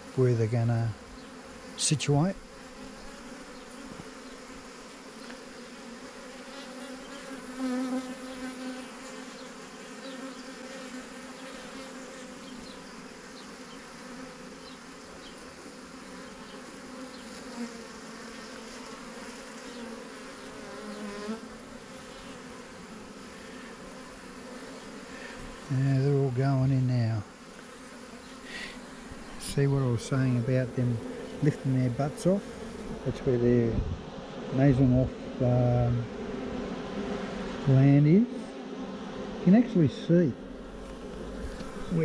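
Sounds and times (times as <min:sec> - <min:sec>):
honeybees buzzing: 0:00.0 - 0:42.0.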